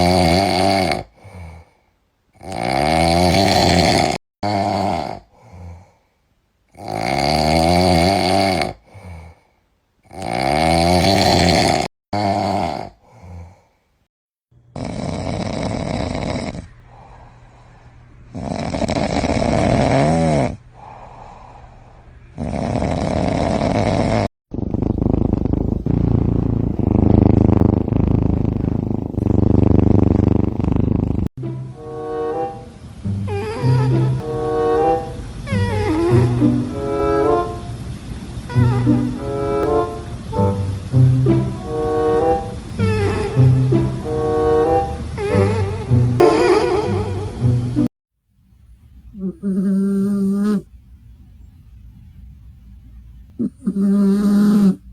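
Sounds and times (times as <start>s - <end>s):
cats snoring: 0.0s - 6.0s, 6.7s - 13.7s, 14.7s - 17.7s, 18.3s - 31.4s, 35.5s - 37.4s, 49.1s - 50.7s, 53.3s - 54.9s.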